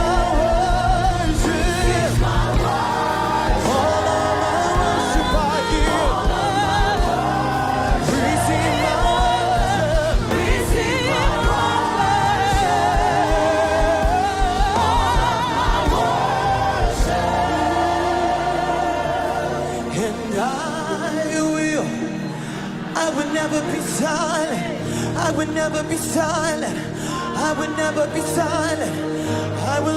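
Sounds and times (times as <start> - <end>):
band with drum beat: 0.0 - 18.6
voices singing long notes: 0.0 - 21.3.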